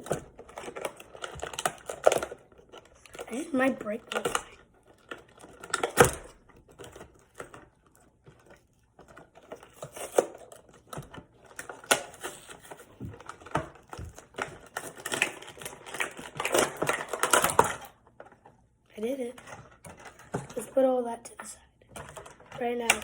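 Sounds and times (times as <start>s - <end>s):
packaging being opened by hand: 0.0s - 7.7s, 8.3s - 18.0s.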